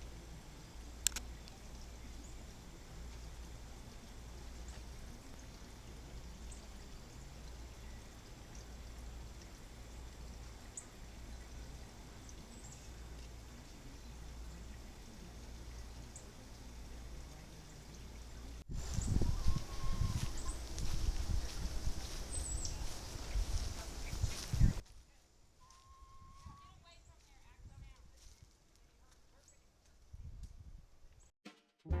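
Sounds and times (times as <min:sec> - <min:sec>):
distant birds chirping: 0:00.0 - 0:24.8
low rumble and soft hiss: 0:00.0 - 0:25.6
sharp click: 0:01.0 - 0:01.3.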